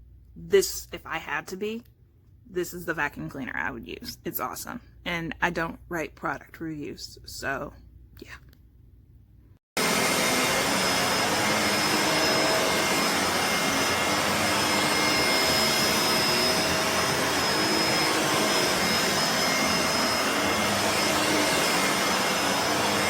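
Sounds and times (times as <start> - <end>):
vacuum cleaner running: 9.8 - 23.0.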